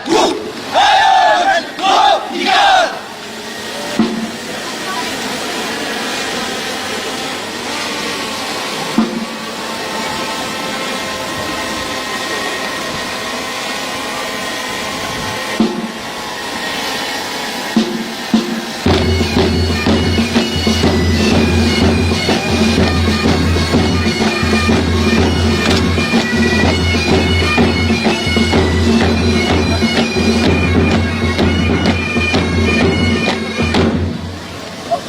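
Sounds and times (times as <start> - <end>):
bagpipes playing a tune: 1.3 - 35.0.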